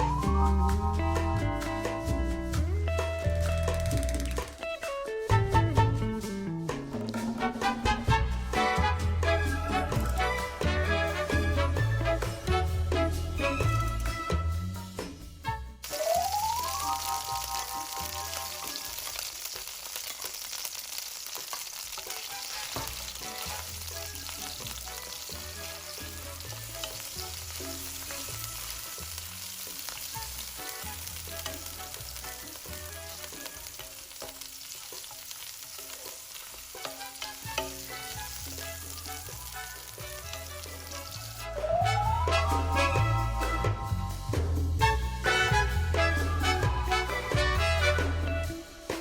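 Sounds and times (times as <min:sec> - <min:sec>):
food sizzling in a pan: 0:15.8 - 0:49.0.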